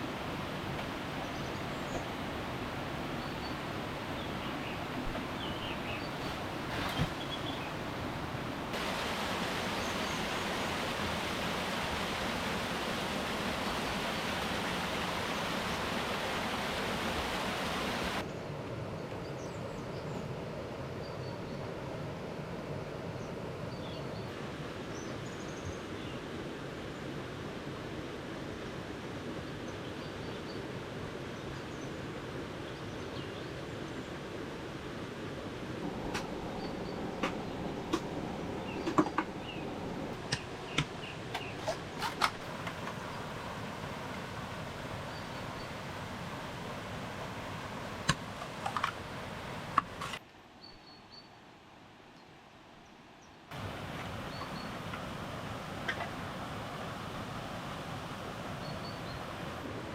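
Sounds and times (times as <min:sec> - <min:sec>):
continuous rushing noise: 0:00.0 - 0:18.9, 0:34.2 - 0:50.2
outdoor background noise: 0:00.0 - 0:59.9
faint bird chirps: 0:54.2 - 0:54.8.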